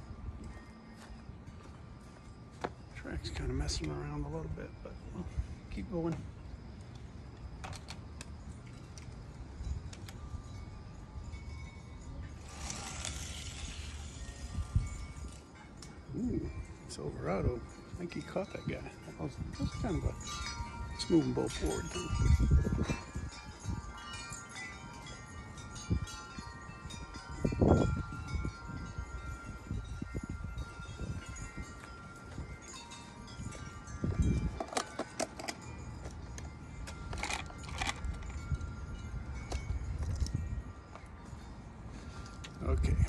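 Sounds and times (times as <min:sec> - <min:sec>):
wind rumble on microphone: 0:08.2 - 0:43.0
toy cars rolling down plastic track: 0:12.4 - 0:14.2.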